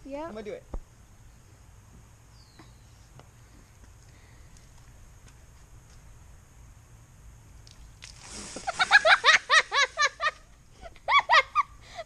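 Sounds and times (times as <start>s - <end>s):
short hiss: 8.0s - 9.1s
high-pitched laughter: 8.6s - 12.0s.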